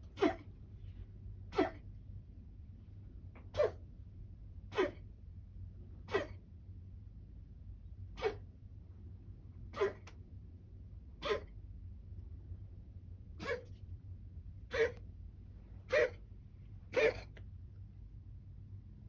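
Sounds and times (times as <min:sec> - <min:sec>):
person coughing: 0:00.2 - 0:00.5, 0:01.5 - 0:01.8, 0:04.7 - 0:05.0, 0:06.1 - 0:06.4, 0:09.8 - 0:10.1, 0:11.2 - 0:11.5, 0:14.7 - 0:15.0, 0:16.9 - 0:17.4.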